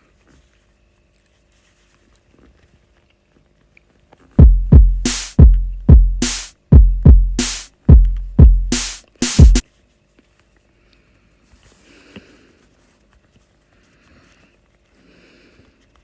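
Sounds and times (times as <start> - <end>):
drum machine kicks: 4.4 - 9.6
snare-like hit: 4.4 - 9.6.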